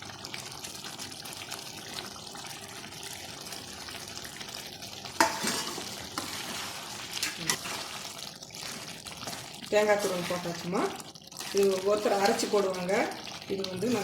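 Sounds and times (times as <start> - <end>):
gravy sizzling: 0.0 - 14.0
spoon scraping pan: 5.2 - 10.5.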